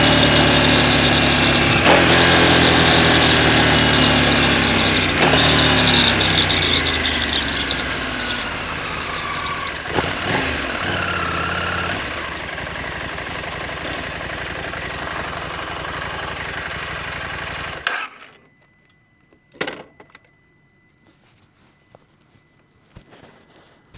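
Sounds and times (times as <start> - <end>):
motorcycle engine running: 0.0 - 17.9.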